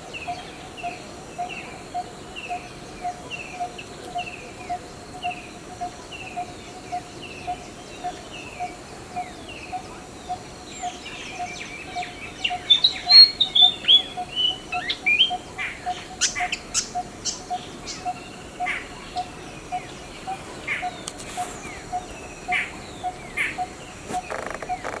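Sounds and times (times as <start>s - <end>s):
birds chirping: 9.8s - 25.0s.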